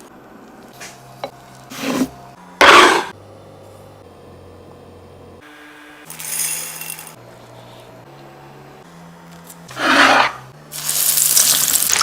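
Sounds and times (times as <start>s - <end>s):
chicken sizzling in frying oil: 10.7s - 12.0s.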